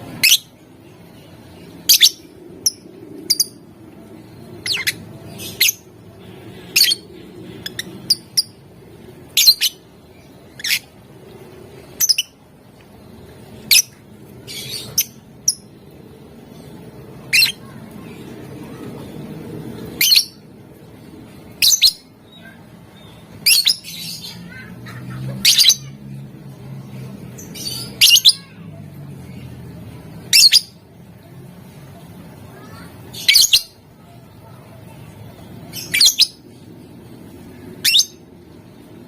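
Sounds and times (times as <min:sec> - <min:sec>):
lovebird chirping and squawking: 0:00.0 - 0:00.6, 0:01.8 - 0:11.1, 0:11.8 - 0:12.4, 0:13.6 - 0:15.7, 0:17.2 - 0:17.8, 0:19.8 - 0:20.5, 0:21.5 - 0:26.1, 0:27.4 - 0:28.6, 0:30.3 - 0:30.8, 0:32.6 - 0:33.8, 0:35.7 - 0:36.7, 0:37.7 - 0:38.4
low steady hum: 0:00.0 - 0:39.0.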